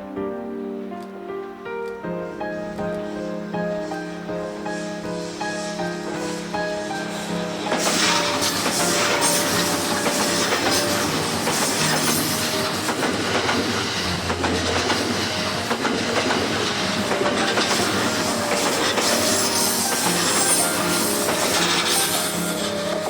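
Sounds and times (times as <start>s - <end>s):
train wheels clattering: 4.7s - 23.0s
wheel squeal on rails: 7.2s - 23.0s.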